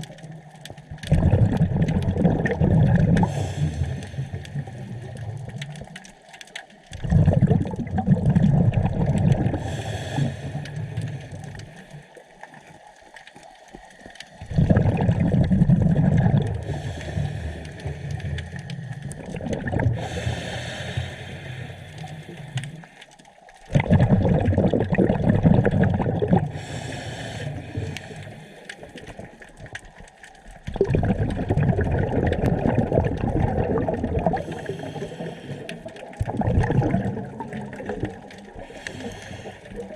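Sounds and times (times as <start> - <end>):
underwater bubbles rushing: 0.0 - 39.9.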